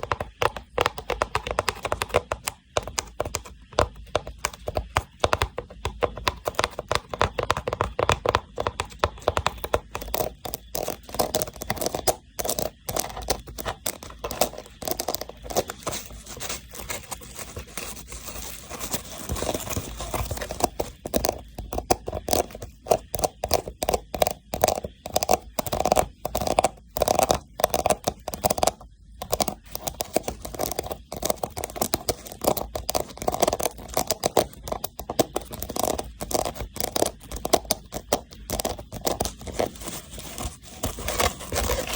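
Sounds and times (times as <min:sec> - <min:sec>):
tapping and scratching on rattan box: 0:00.0 - 0:41.9.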